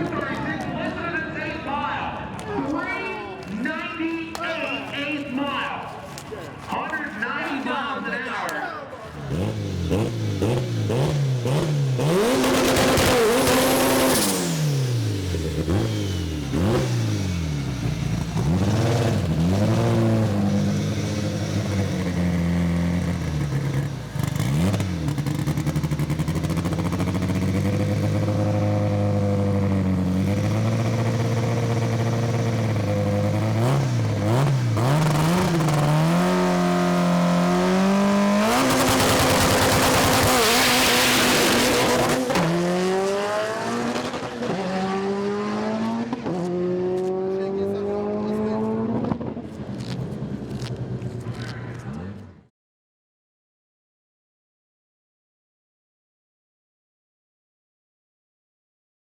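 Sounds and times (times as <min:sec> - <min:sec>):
racing car engine revving: 0:09.1 - 0:51.4.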